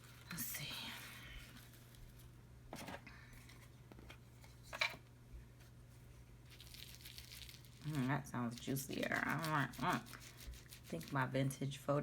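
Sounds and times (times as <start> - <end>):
faint paper handling sounds: 0.0 - 5.0
low room hum: 0.0 - 12.0.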